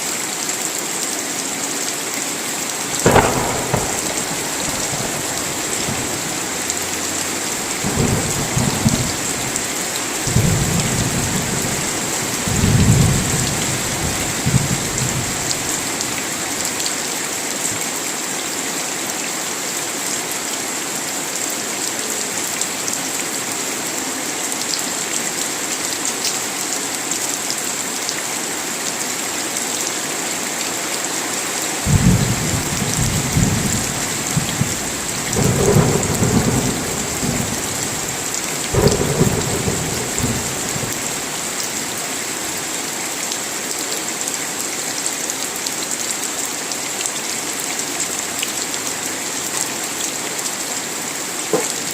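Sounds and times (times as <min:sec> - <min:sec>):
heavy rain: 0:00.0 - 0:51.9
thunder rumbling: 0:02.9 - 0:16.8, 0:31.9 - 0:41.9.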